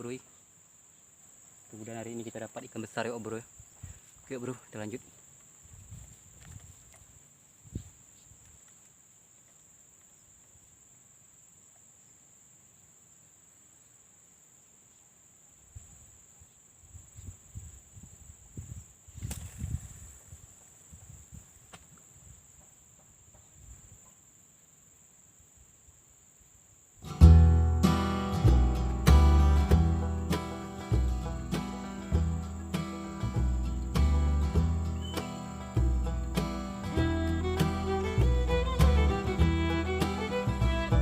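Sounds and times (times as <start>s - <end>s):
insects droning: 0.0s - 41.0s
low thumps and rumbles: 27.2s - 41.0s.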